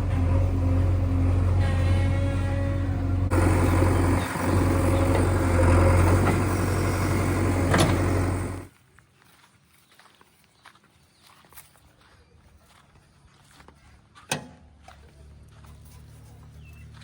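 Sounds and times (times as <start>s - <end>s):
heavy diesel engine running: 0.0s - 8.7s.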